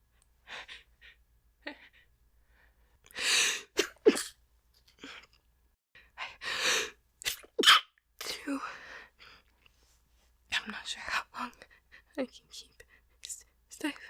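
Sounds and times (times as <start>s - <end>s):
woman stifling sneezes: 7.2s - 7.9s.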